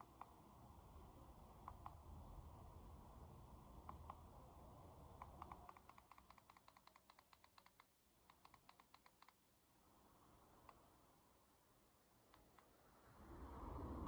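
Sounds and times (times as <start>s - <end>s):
faint rapid clicking: 0.0s - 2.2s, 3.7s - 9.6s, 10.4s - 11.2s, 12.2s - 12.8s.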